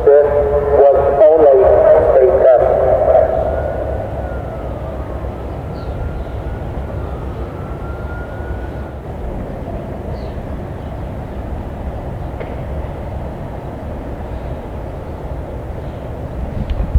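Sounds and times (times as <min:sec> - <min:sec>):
distant traffic: 0:00.0 - 0:16.9
wind on microphone: 0:16.3 - 0:16.9.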